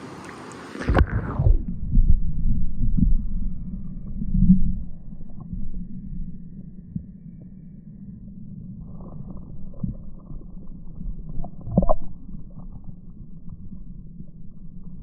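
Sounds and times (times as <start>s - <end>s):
stream hiss: 0.0s - 1.3s.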